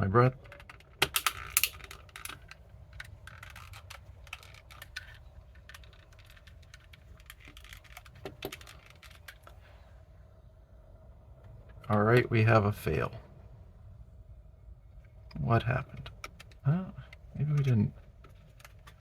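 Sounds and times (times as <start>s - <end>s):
plastic clicks and scrapes: 0.4s - 9.5s
sharp plastic clicks: 0.4s - 9.5s.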